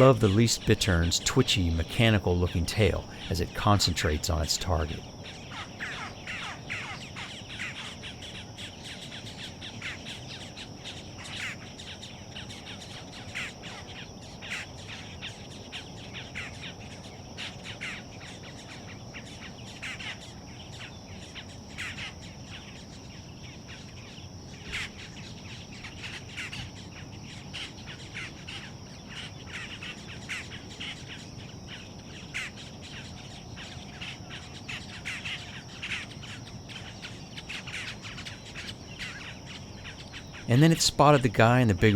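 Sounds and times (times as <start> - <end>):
birds chirping: 0.0 - 7.8, 32.7 - 41.9
high-pitched insect drone: 0.0 - 41.8.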